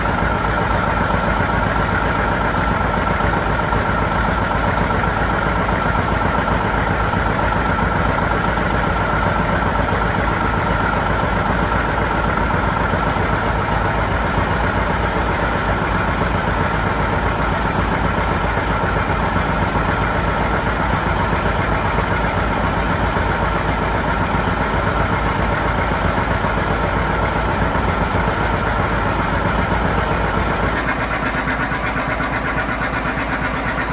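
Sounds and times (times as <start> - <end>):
diesel tractor engine running: 0.0 - 33.9.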